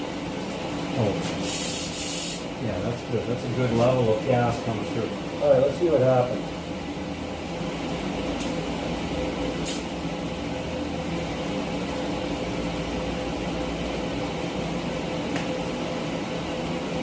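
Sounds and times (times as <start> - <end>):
welding arc buzzing: 0.0 - 2.6, 7.8 - 10.5.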